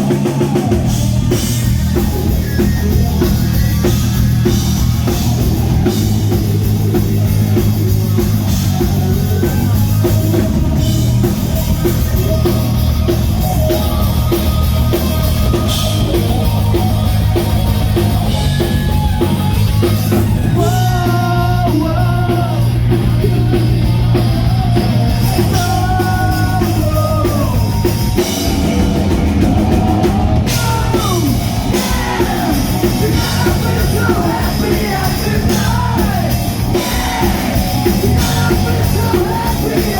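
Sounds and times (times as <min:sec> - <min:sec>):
drum kit beat: 0:00.0 - 0:39.9
rock band playing live: 0:00.0 - 0:39.9
person singing: 0:20.4 - 0:27.9, 0:29.9 - 0:39.9.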